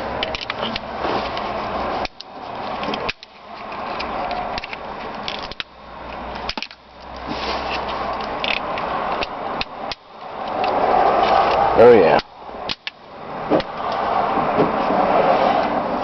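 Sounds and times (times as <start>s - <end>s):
sharp plastic clicks: 2.0s - 7.3s, 8.1s - 10.8s, 11.4s - 14.0s.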